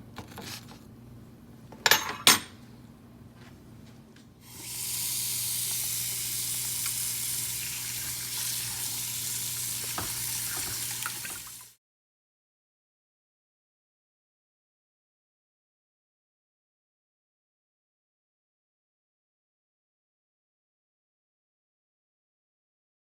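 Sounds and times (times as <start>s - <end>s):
hot oil sizzling in fryer: 4.4s - 11.8s.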